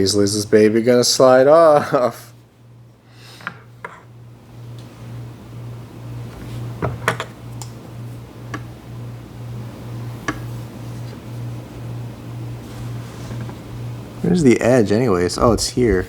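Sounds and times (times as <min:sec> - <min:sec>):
pulsing low hum: 0:15.4 - 0:16.0.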